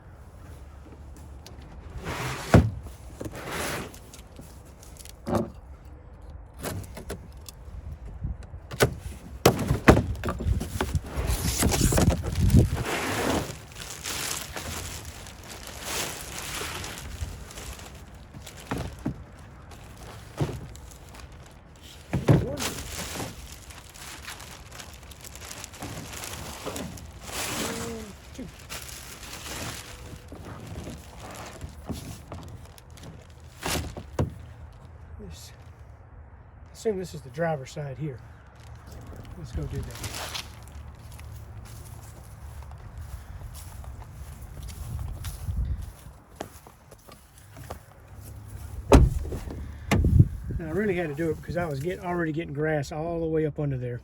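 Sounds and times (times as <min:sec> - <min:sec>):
scraping and rustling: 0:00.4 - 0:05.7, 0:08.9 - 0:34.9, 0:38.6 - 0:52.2
plastic liners clunking: 0:00.9 - 0:05.7, 0:08.7 - 0:12.7, 0:13.4 - 0:34.6.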